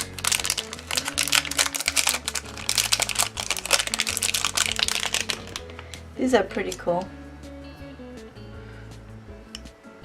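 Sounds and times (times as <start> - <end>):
plastic packaging crinkling: 0.0 - 7.1.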